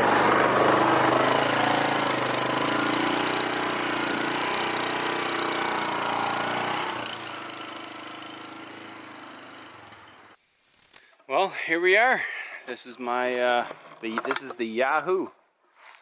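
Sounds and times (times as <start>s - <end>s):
off-road vehicle engine running: 0.0s - 10.4s.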